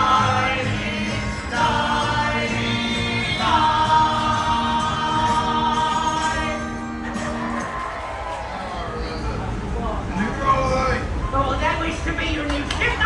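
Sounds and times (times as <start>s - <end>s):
people singing a sing-along song: 0.0s - 7.8s
backing track music: 0.0s - 8.4s.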